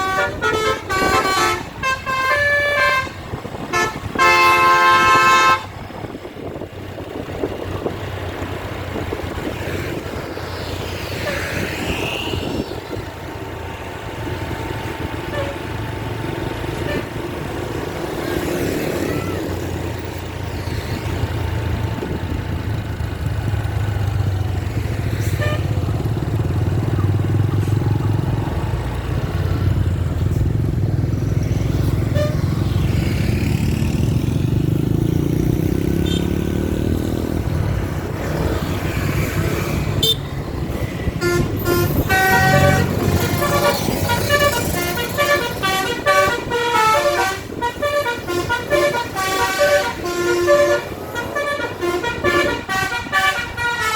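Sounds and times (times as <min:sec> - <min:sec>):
multi-tone bus horn melody: 0:00.0 - 0:05.8, 0:14.9 - 0:18.4, 0:25.2 - 0:26.6, 0:31.8 - 0:32.9, 0:35.7 - 0:38.6, 0:39.9 - 0:53.9
bus engine rumbling: 0:00.0 - 0:53.9.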